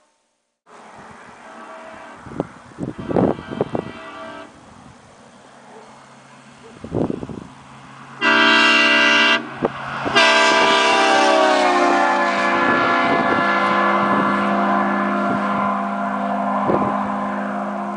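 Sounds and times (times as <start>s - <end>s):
train horn blasts: 1.2s - 4.6s, 8.2s - 17.9s.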